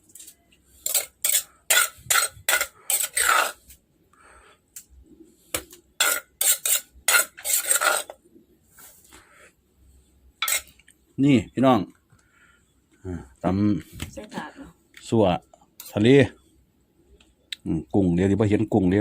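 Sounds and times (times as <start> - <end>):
metal spoon scraping a dish: 0.2 - 3.7, 6.0 - 8.2, 10.4 - 10.8.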